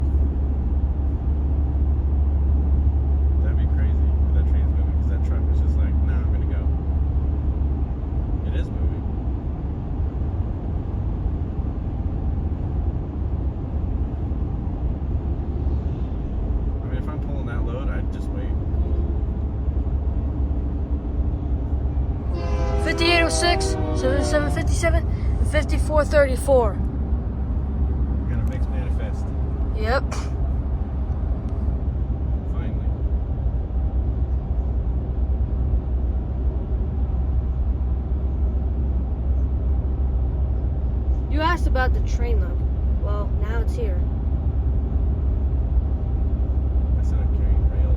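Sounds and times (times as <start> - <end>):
freight train passing: 6.8 - 42.0.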